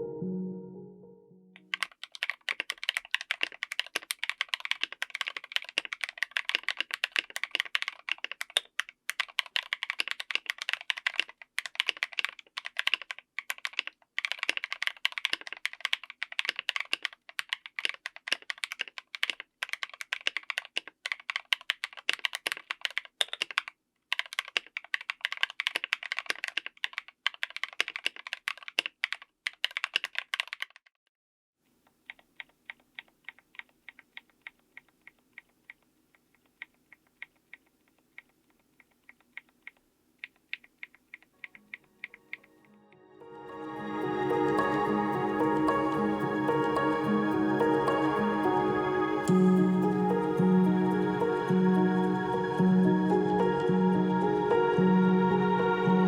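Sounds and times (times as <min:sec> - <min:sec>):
mechanical keyboard typing: 0:01.6 - 0:30.9, 0:31.9 - 0:42.6.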